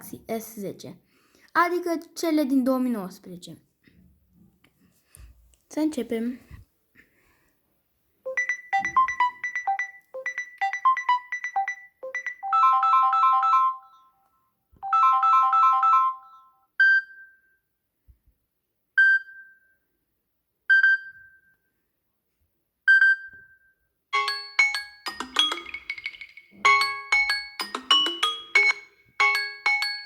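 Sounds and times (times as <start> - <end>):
plucked ringtone melody: 8.3 - 14.1, 24.2 - 30.0.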